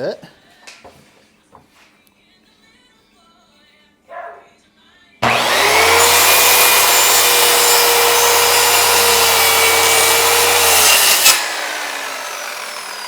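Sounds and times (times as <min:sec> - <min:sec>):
power saw cutting wood: 0:05.2 - 0:13.0.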